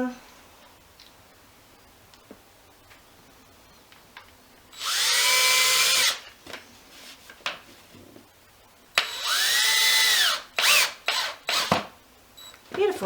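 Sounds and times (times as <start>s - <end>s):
power drill motor whine: 4.8s - 6.2s, 9.0s - 11.8s.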